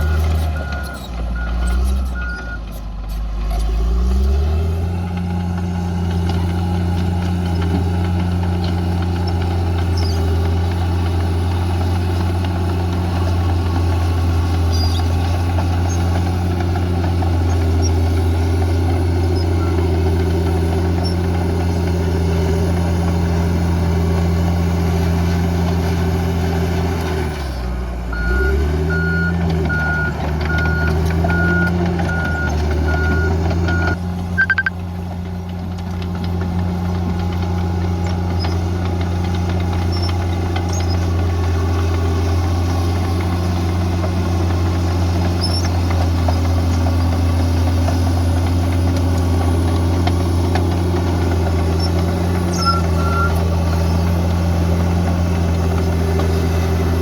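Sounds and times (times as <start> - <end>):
heavy diesel engine running: 0.0 - 57.0
reverse alarm beeping: 28.2 - 34.7, 52.6 - 53.4.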